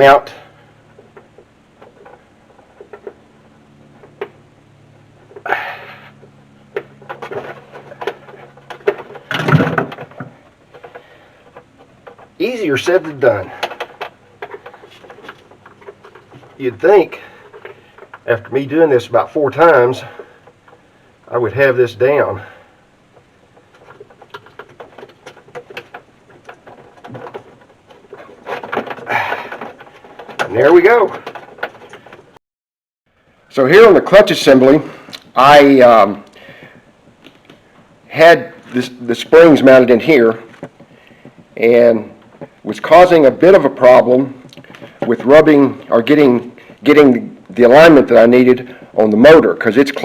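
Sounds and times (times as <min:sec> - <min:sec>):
faint steady hum: 0:00.0 - 0:32.4, 0:33.1 - 0:50.0
wire handling clicks and knocks: 0:00.9 - 0:04.5, 0:06.1 - 0:21.0, 0:23.0 - 0:32.4, 0:34.6 - 0:50.0
scraping rustling bursts: 0:06.1 - 0:19.2, 0:23.2 - 0:32.4.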